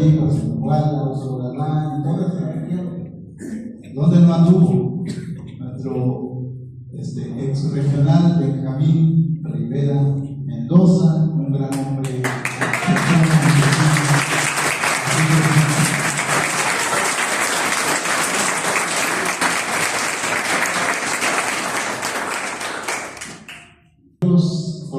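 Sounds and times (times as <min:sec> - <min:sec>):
audience applauding: 0:12.0 - 0:23.7
person speaking: 0:15.0 - 0:16.0.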